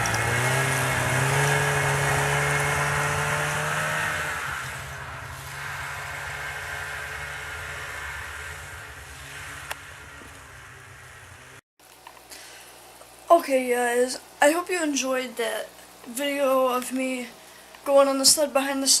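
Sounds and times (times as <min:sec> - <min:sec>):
snowmobile engine revving: 0:00.0 - 0:11.6.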